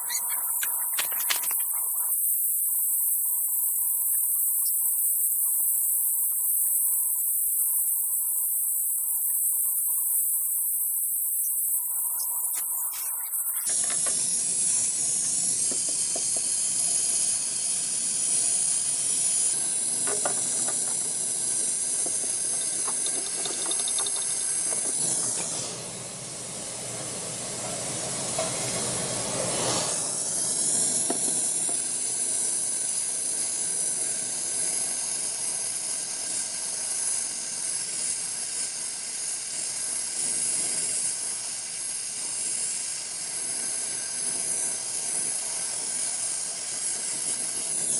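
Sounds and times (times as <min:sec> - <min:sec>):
torch flame hissing: 0:29.2 - 0:40.0.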